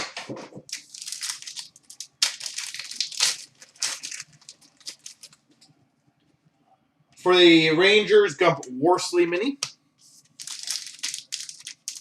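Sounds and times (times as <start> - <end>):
cards being handled: 0.1 - 5.5, 9.6 - 12.0
wrappers crinkling and tearing: 0.6 - 5.6, 10.1 - 12.0.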